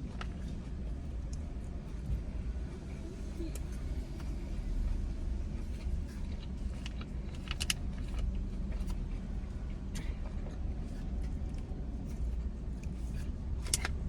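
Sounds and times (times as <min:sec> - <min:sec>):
low rumble: 0:00.0 - 0:14.0.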